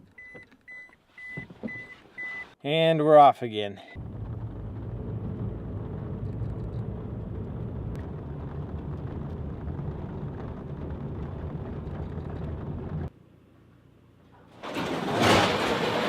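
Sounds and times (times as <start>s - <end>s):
pickup engine and road noise: 4.0s - 14.2s.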